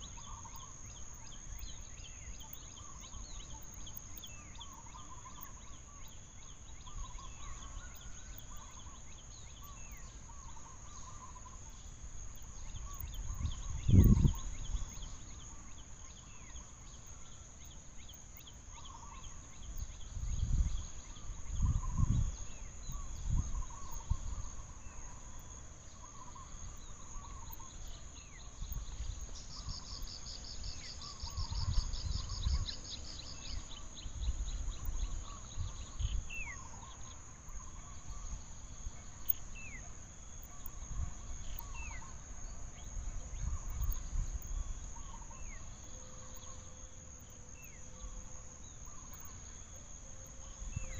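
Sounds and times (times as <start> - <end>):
high insect drone: 0.0 - 50.9.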